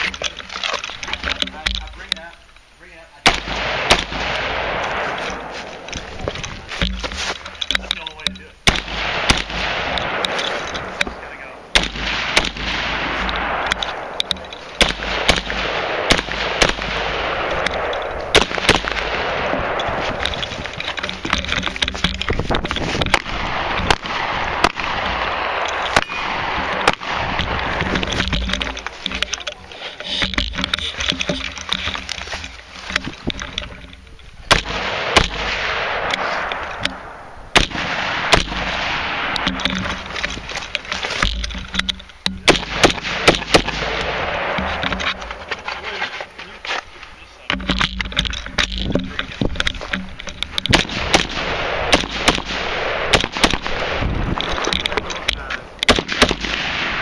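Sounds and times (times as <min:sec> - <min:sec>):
steady rushing noise: 0:00.0 - 0:57.0
rifle single shots: 0:03.2 - 0:06.6, 0:08.6 - 0:21.6, 0:22.6 - 0:29.4, 0:34.4 - 0:40.4, 0:42.4 - 0:45.4, 0:50.6 - 0:57.0.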